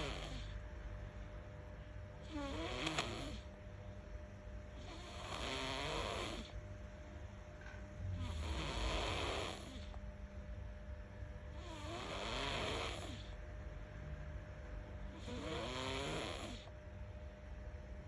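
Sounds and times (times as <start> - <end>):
baby snoring: 0.0 - 0.6, 2.2 - 3.5, 4.8 - 6.6, 8.1 - 10.0, 11.5 - 13.4, 15.1 - 16.7.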